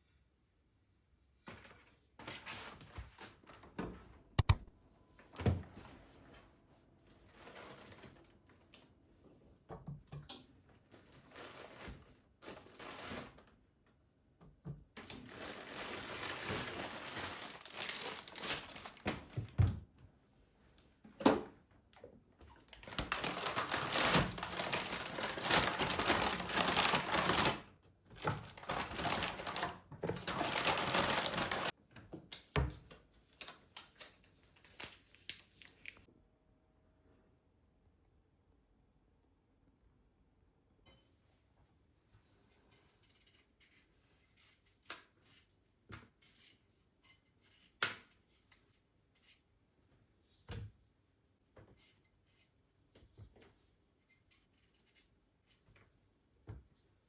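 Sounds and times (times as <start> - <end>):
rustling crinkling noise: 15.2 - 19.4, 22.6 - 31.8.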